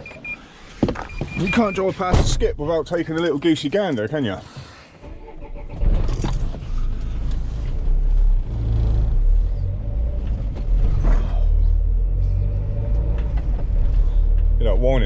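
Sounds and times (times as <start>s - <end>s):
van engine rumbling: 5.0s - 15.0s.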